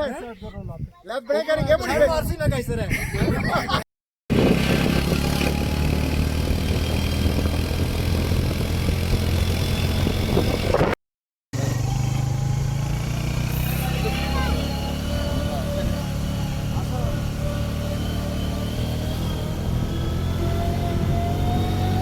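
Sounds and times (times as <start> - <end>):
vehicle engine running: 4.3 - 10.9, 11.6 - 22.0
road noise: 4.3 - 11.0, 11.6 - 22.0.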